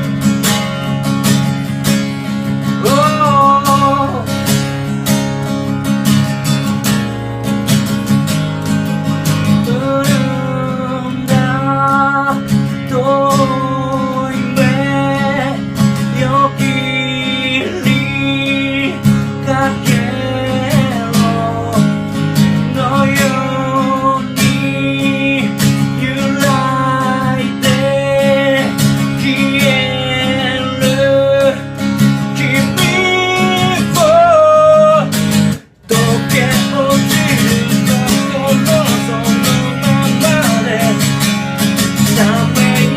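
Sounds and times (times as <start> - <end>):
acoustic guitar strumming: 0.0 - 42.9
person singing: 2.7 - 4.6, 9.4 - 42.9.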